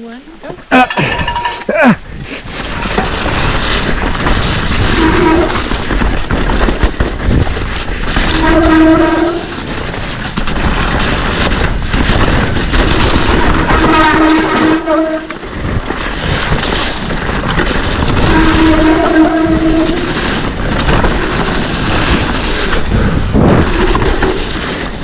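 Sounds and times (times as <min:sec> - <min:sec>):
rain: 0:00.0 - 0:25.0
tyres on trail: 0:00.0 - 0:25.0
wind noise: 0:00.2 - 0:25.0
bike rattling and knocking: 0:00.7 - 0:25.0.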